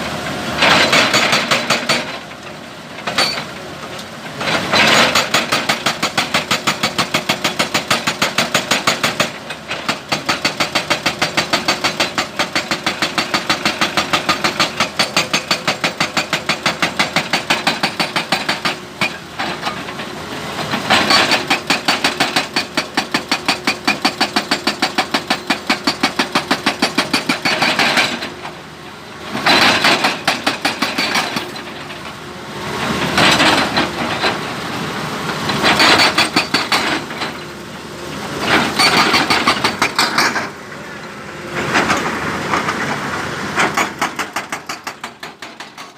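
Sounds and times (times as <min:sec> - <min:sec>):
excavator engine running: 0:00.0 - 0:45.9
hydraulic breaker hammering stone: 0:00.6 - 0:02.2, 0:04.6 - 0:20.0, 0:20.7 - 0:28.4, 0:29.4 - 0:31.8, 0:35.6 - 0:37.4, 0:38.4 - 0:40.5, 0:43.6 - 0:45.9.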